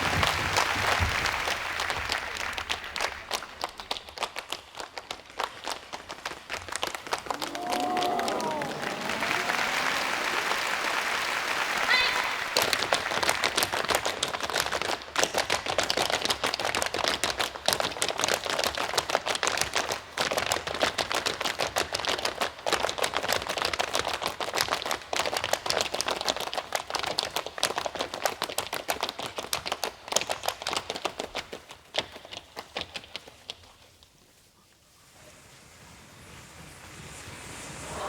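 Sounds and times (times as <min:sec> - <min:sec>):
audience applauding: 0:00.0 - 0:27.4.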